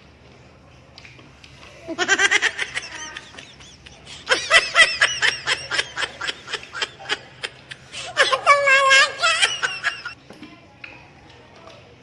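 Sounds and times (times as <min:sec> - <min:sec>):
people laughing: 0:01.8 - 0:10.2.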